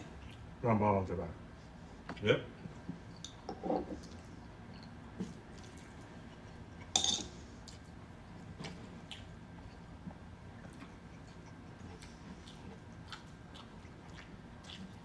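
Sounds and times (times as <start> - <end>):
chewing and squishing: 0.0 - 0.6, 4.0 - 6.9, 7.6 - 15.0
utensil clinking on a dish: 6.9 - 7.4.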